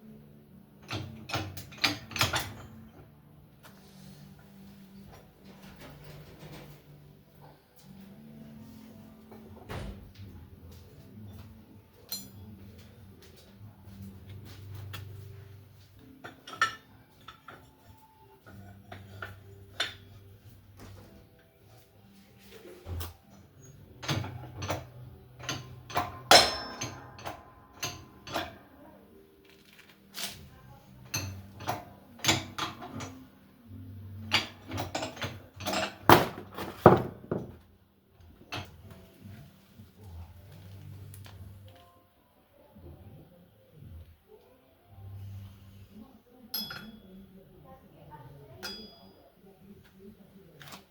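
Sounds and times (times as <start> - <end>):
metal tools clinking and knocking: 0.8 - 2.9, 12.0 - 12.7, 16.0 - 20.3, 22.9 - 28.6, 34.2 - 37.6, 46.5 - 47.2, 48.6 - 49.2.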